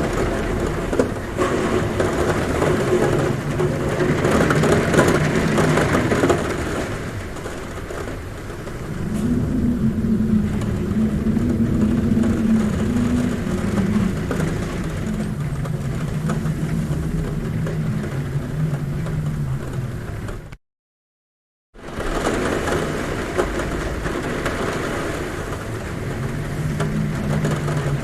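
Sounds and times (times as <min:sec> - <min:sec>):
rain: 0:00.0 - 0:20.6, 0:21.8 - 0:28.0
low droning hum: 0:08.6 - 0:20.6.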